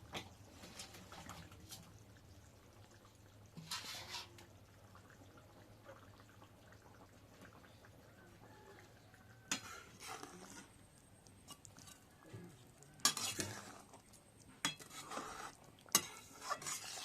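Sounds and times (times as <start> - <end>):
spoon scraping a cooking pot: 3.6 - 4.5, 9.5 - 17.0.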